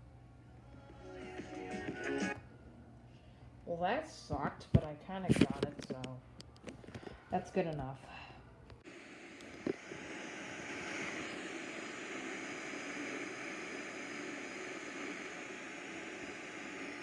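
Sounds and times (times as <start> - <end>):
static hiss: 8.8 - 17.0.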